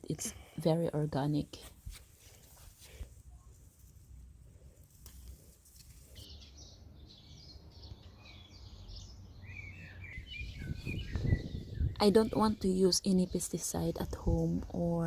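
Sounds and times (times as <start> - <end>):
small birds chirping: 5.2 - 15.0.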